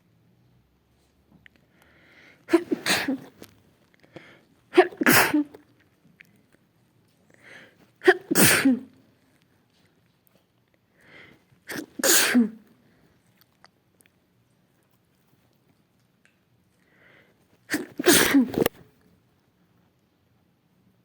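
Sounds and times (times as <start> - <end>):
quick in-breath: 1.7 - 2.5, 4.0 - 4.5, 7.3 - 7.8, 10.9 - 11.5, 16.8 - 17.4
person sneezing: 2.5 - 3.4, 4.7 - 5.7, 8.0 - 9.0, 11.7 - 12.7, 17.7 - 18.8.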